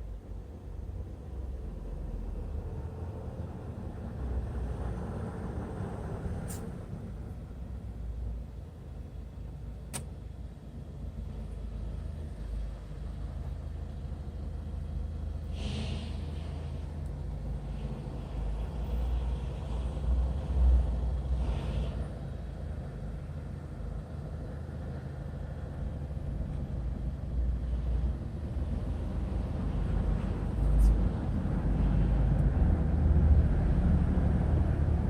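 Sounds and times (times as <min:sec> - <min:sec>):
brief hisses: 0:06.5 - 0:06.7, 0:15.5 - 0:16.6.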